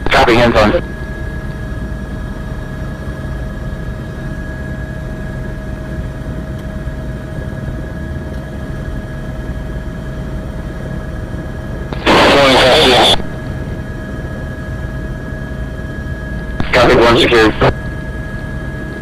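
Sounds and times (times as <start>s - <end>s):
helicopter engine and rotor drone: 0.0s - 19.0s
steady whining tones: 7.4s - 19.0s.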